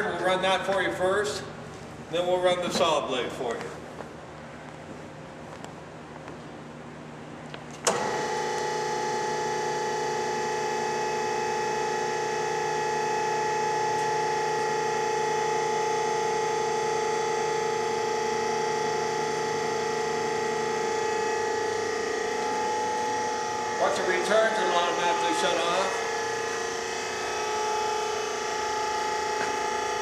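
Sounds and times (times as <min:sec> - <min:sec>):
band saw humming: 0:07.9 - 0:30.0.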